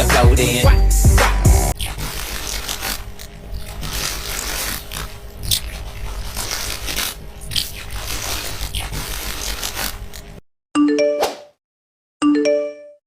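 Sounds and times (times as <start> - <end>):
rustling and scraping: 1.8 - 10.4.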